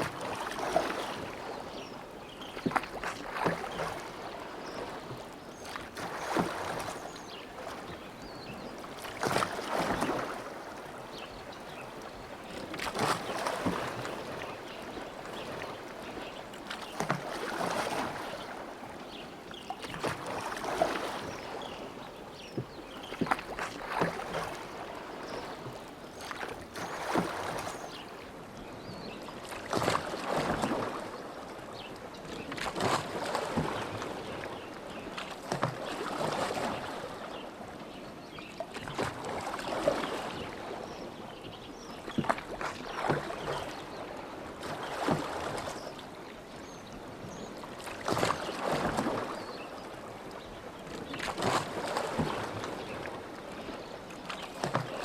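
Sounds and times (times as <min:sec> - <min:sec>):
oars splashing through water: 0:00.0 - 0:28.4, 0:29.1 - 0:55.0.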